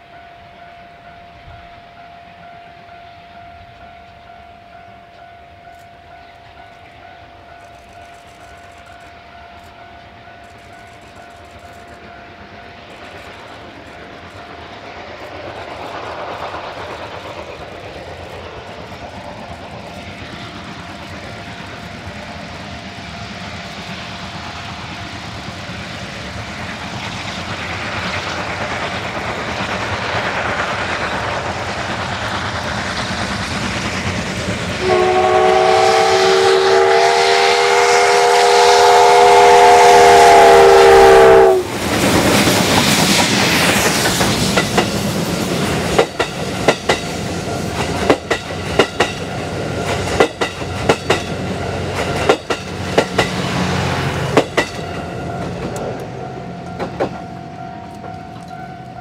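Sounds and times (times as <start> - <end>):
steam locomotive exhaust: 0.0 - 59.0
steady high tone: 53.5 - 59.0.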